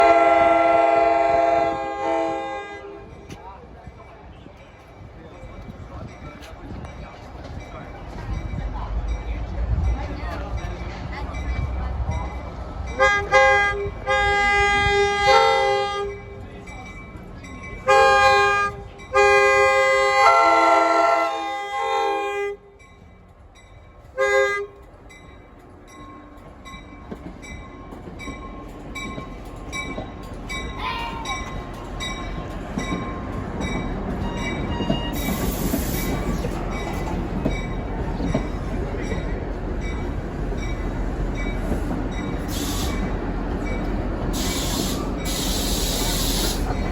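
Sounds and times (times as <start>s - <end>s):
diesel train horn: 0.0s - 3.2s, 13.0s - 16.2s, 17.8s - 22.8s, 24.2s - 24.8s, 42.5s - 43.0s
train rumble: 0.0s - 46.9s.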